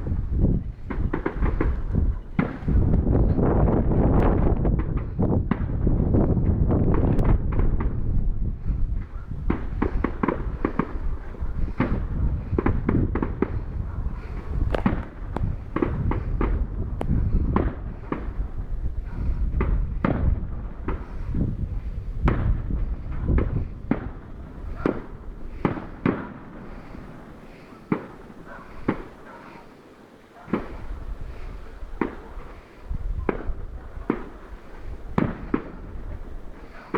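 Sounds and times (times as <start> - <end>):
fireworks bangs and pops: 0.0 - 36.9.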